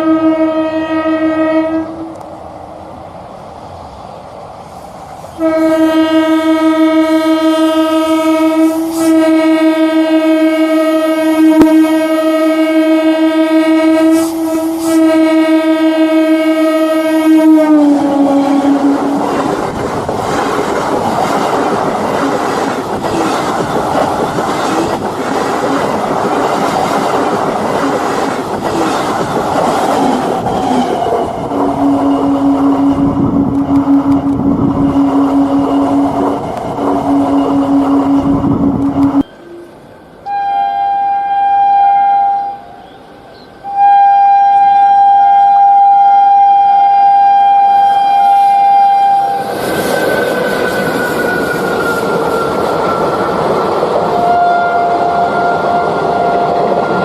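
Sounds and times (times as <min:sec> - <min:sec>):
train horn blast: 0:00.0 - 0:02.2, 0:05.3 - 0:19.6, 0:31.5 - 0:42.9, 0:43.6 - 0:49.5, 0:54.1 - 0:57.0
train wheels clattering over rail joints: 0:19.3 - 0:31.4.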